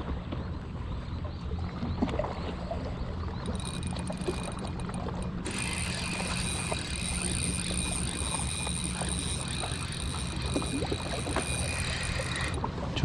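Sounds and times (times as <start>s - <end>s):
spinning reel clicking: 3.4s - 12.6s
low hum: 3.4s - 13.0s
faint whine: 3.5s - 12.6s.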